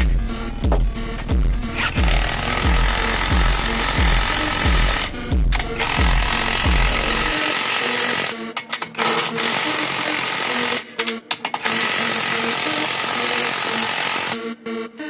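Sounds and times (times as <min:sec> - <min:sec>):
power tool running: 0:00.0 - 0:08.4, 0:09.0 - 0:11.0, 0:11.6 - 0:14.4
music: 0:00.0 - 0:15.0.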